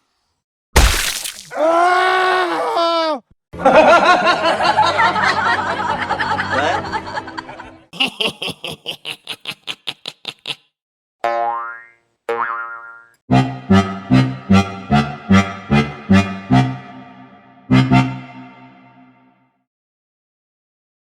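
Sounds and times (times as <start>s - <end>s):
laughter: 3.6s - 10.7s.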